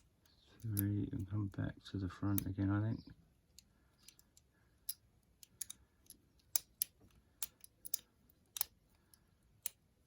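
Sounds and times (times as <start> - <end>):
lock pick clicking in padlock: 4.8 - 8.8.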